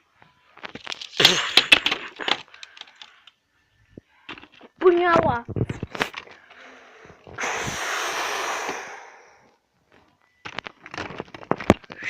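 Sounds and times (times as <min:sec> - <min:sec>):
loud hissing whoosh: 0:07.3 - 0:09.4.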